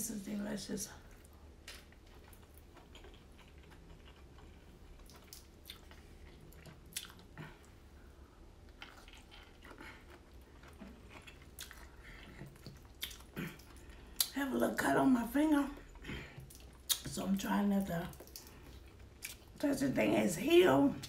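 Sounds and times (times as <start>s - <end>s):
person chewing food: 1.1s - 14.4s, 15.7s - 17.1s, 18.1s - 19.6s.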